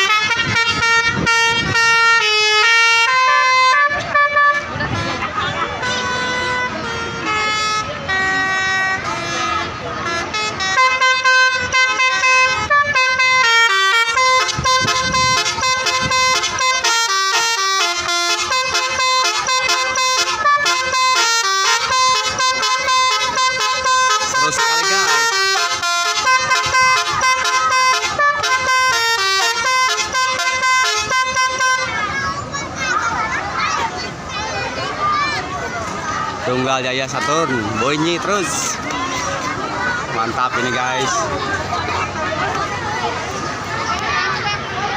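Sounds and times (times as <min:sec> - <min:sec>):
multi-tone bus horn tune: 0:00.0 - 0:32.3.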